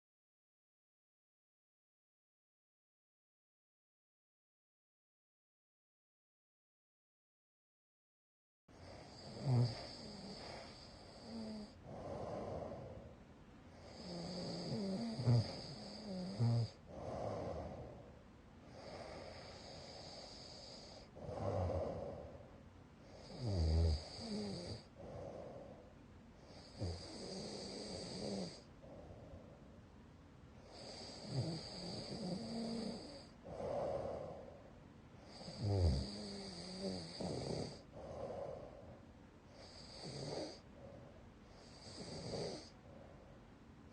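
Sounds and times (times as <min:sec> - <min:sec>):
person snoring loudly: 0:09.0 - 0:13.0, 0:13.8 - 0:18.0, 0:18.7 - 0:22.3, 0:23.2 - 0:25.4, 0:26.5 - 0:28.7, 0:30.7 - 0:34.4, 0:35.3 - 0:38.7, 0:39.6 - 0:40.6, 0:41.6 - 0:42.7.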